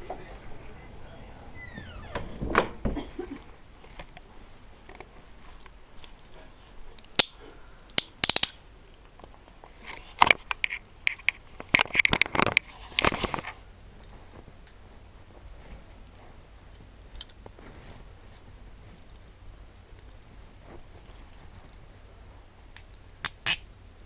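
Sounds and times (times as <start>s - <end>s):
metal handcuffs clicking: 8.0s - 8.6s.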